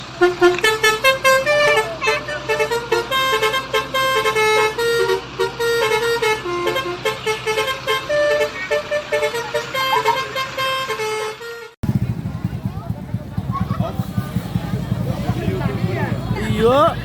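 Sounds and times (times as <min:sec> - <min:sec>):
musical bus air horn: 0:00.0 - 0:11.8.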